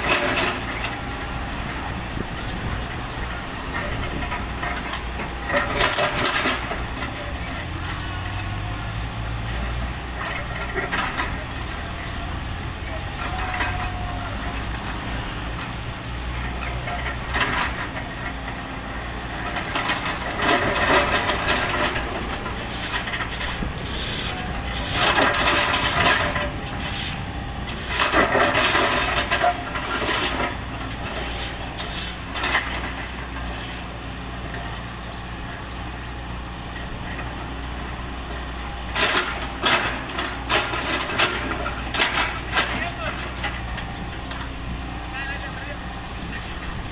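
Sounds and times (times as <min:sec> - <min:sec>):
heavy engine running: 0:00.0 - 0:46.9
scraping and clatter: 0:19.3 - 0:34.6, 0:38.9 - 0:44.5.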